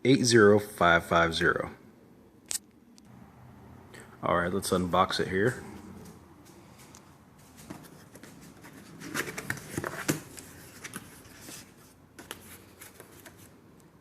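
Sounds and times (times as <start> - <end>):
packaging rustling: 7.5 - 13.6.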